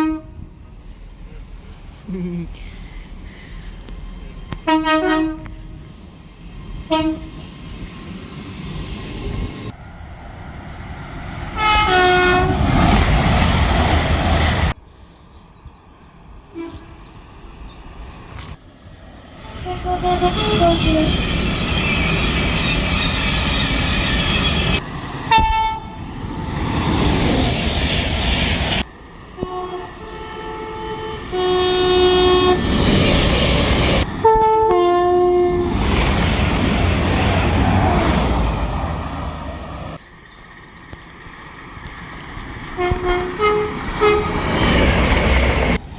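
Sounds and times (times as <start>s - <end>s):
train horn blasts: 0.0s - 0.6s, 4.6s - 5.9s, 6.9s - 7.4s, 11.6s - 12.6s, 16.5s - 17.1s, 19.4s - 21.3s, 25.3s - 26.0s, 29.4s - 32.7s, 34.2s - 35.8s, 42.8s - 44.6s
passing train rumble and clatter: 0.0s - 45.9s.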